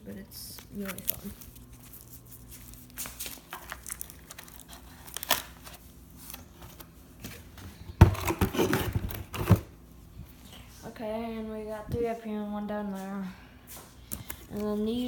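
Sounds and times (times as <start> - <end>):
packaging rustling: 0.4 - 9.7.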